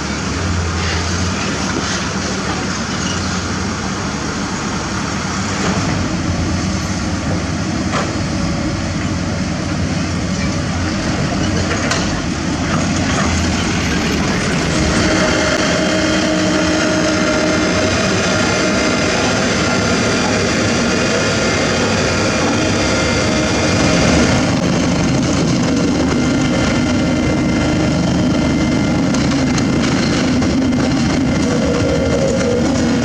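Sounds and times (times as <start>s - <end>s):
excavator engine and hydraulics: 0.0s - 33.0s
hydraulic whining tones: 12.8s - 33.0s.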